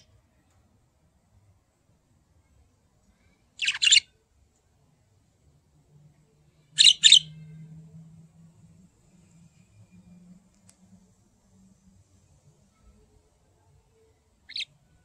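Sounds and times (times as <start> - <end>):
budgerigars chirping: 3.6 - 4.0, 6.8 - 7.4, 14.5 - 14.7.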